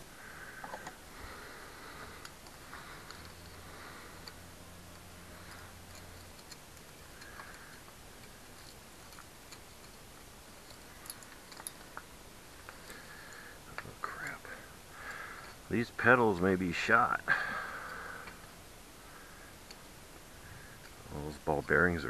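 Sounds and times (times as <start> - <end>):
low steady hum: 0.0 - 22.0
small clicks of hand tools: 2.2 - 3.6, 4.2 - 10.0, 10.6 - 13.9.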